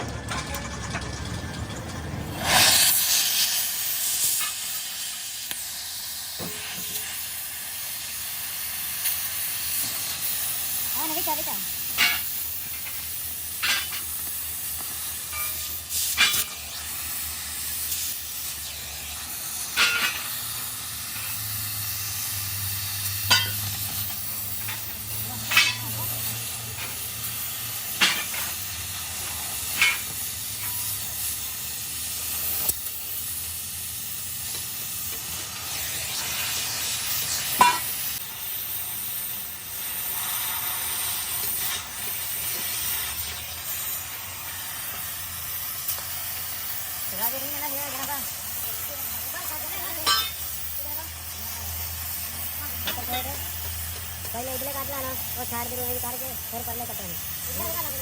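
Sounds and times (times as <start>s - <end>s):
gas cutting torch hissing: 2.0s - 58.0s
sharp metal clanks: 11.8s - 16.8s, 19.6s - 20.5s, 23.1s - 31.1s, 37.5s - 38.2s, 49.7s - 50.8s.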